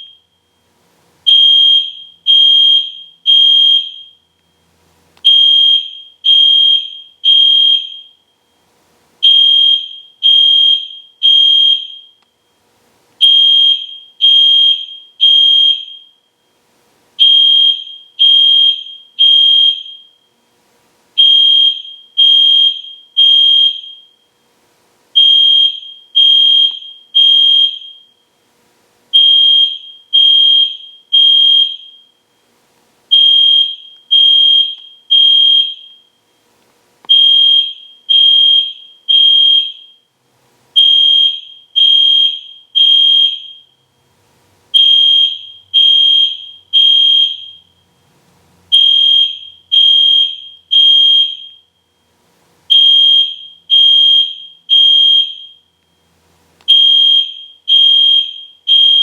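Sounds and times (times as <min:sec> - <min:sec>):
fire alarm horn beeping: 0:00.0 - 0:00.6, 0:01.2 - 0:04.2, 0:05.2 - 0:08.5, 0:09.2 - 0:12.3, 0:13.2 - 0:16.4, 0:17.2 - 0:20.3, 0:21.2 - 0:24.3, 0:25.2 - 0:28.3, 0:29.1 - 0:32.3, 0:33.1 - 0:36.2, 0:37.1 - 0:40.1, 0:40.8 - 0:43.8, 0:44.7 - 0:47.8, 0:48.7 - 0:52.0, 0:52.7 - 0:55.8, 0:56.7 - 0:59.0.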